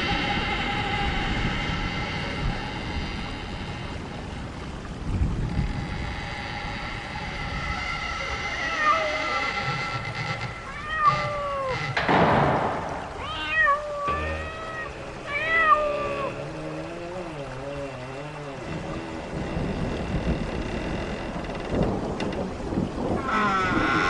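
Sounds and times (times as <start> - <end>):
cat meowing: 8.6 - 9.7, 10.7 - 12.0, 13.2 - 16.7
eerie tones: 13.8 - 18.7.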